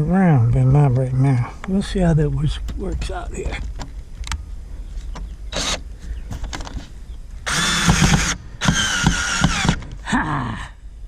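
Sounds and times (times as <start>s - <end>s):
power drill driving a screw: 5.5s - 5.8s, 7.5s - 9.8s.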